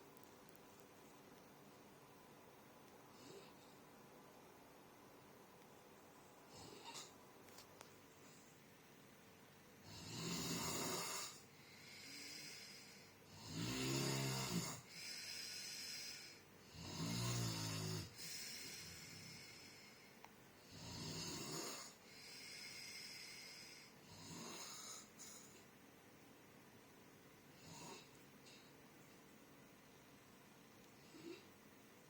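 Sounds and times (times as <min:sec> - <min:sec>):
rattling snores: 0:06.5 - 0:07.1, 0:09.9 - 0:11.4, 0:12.0 - 0:19.7, 0:20.7 - 0:25.6, 0:27.6 - 0:28.6.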